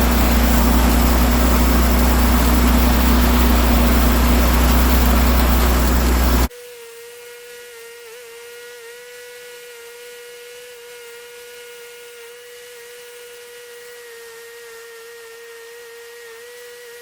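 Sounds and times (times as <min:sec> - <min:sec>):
small motor whining: 0:00.0 - 0:07.8.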